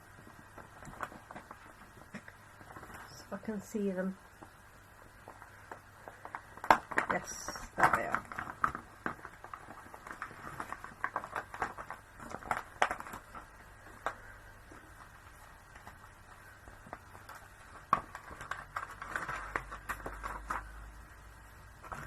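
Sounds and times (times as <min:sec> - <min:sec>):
plastic pack clicking and rustling: 0:00.5 - 0:03.2, 0:05.2 - 0:14.2, 0:15.7 - 0:20.8.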